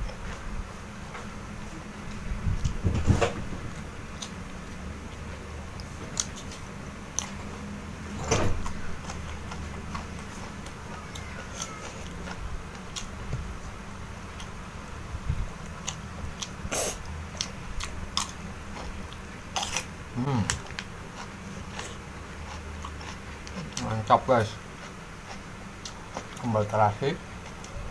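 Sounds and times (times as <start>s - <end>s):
steady low hum: 0.0s - 27.9s
chewing crunchy food: 8.6s - 14.6s, 15.4s - 26.8s.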